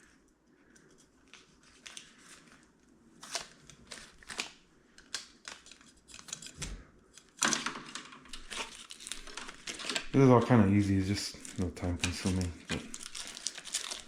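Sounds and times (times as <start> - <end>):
faint clicks and rustles of hands: 0.0 - 7.4.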